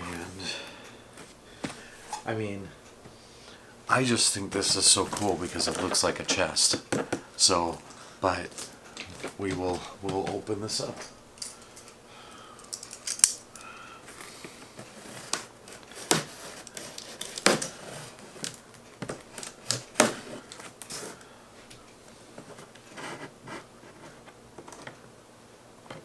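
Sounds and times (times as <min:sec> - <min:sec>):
packing tape cut and pulled: 0:14.2 - 0:21.2.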